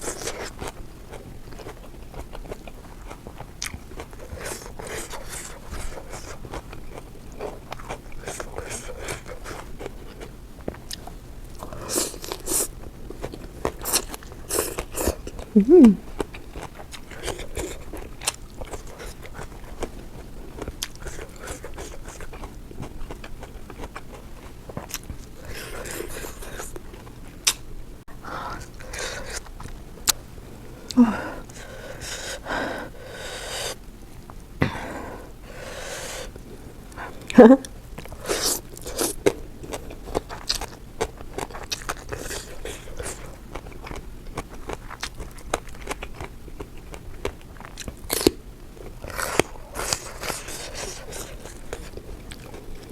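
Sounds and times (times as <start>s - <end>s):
person chewing crunchy food: 0.0s - 27.7s, 28.3s - 52.9s
person breathing hard through mouth: 30.9s - 33.8s, 34.6s - 36.3s.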